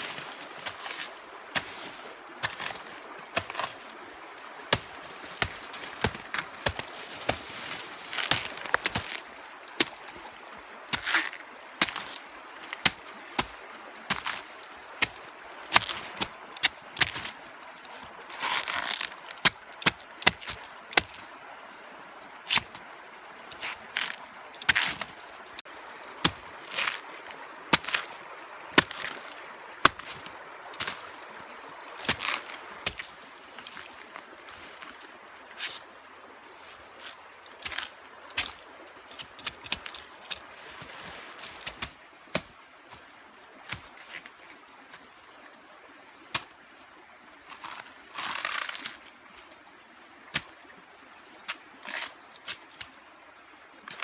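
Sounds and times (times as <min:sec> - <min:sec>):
blade chopping and cutting: 0:26.2 - 0:28.1.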